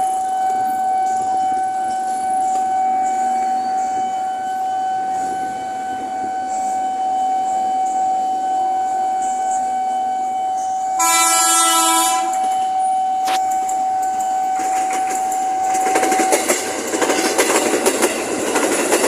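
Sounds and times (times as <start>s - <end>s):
train noise: 0.0s - 19.0s
train horn blast: 0.2s - 14.8s.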